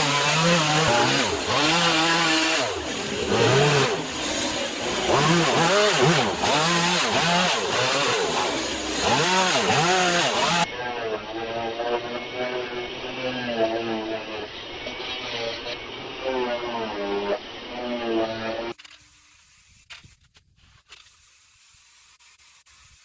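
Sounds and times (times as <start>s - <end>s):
chainsaw revving cutting wood: 0.0s - 10.7s.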